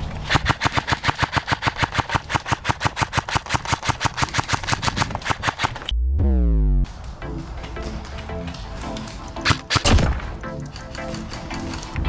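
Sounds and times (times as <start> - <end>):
airsoft gun automatic fire: 0.3 - 5.9.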